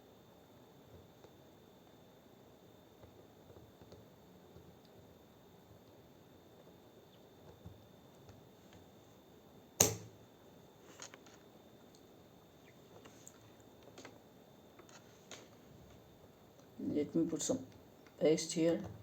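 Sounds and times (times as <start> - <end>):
sharp tool click: 9.8 - 10.2.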